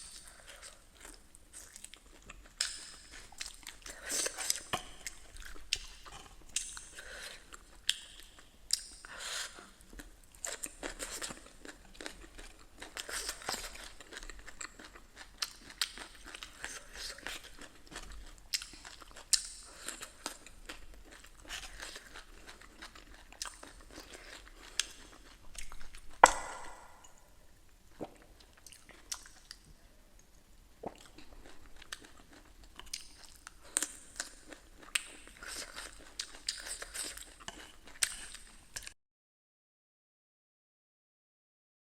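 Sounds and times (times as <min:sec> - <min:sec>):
person chewing crunchy food: 0:00.0 - 0:27.3, 0:27.9 - 0:29.7, 0:30.8 - 0:38.9
mouth clicks: 0:26.2 - 0:27.2.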